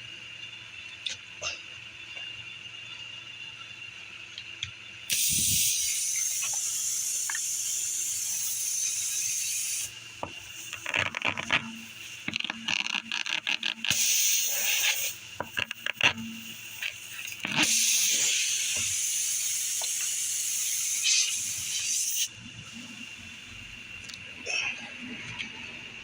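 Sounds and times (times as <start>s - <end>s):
air hissing out of tire: 5.1s - 11.0s, 13.9s - 15.5s, 16.4s - 23.4s.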